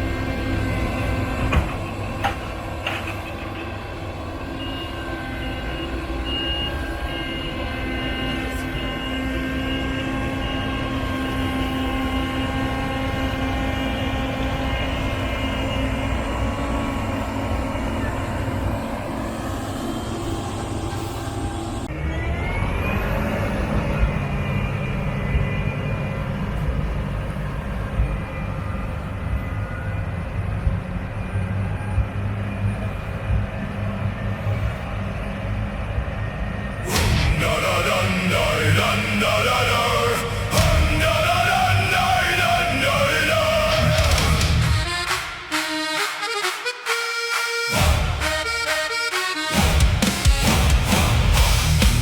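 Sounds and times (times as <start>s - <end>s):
combine harvester running: 0.0s - 29.5s, 30.1s - 52.0s.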